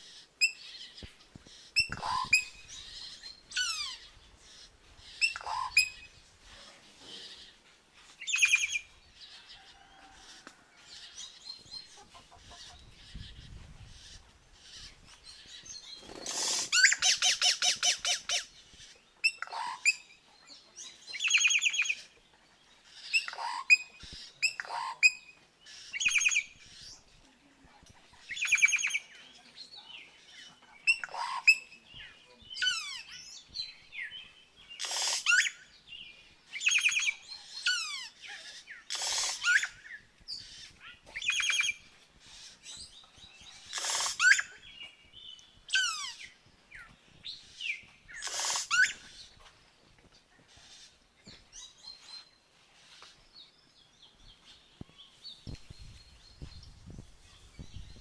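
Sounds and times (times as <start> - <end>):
harsh bird calls: 30.0 - 49.4
bird rattle call: 34.8 - 35.4, 38.9 - 39.6, 43.7 - 44.4, 48.2 - 48.8.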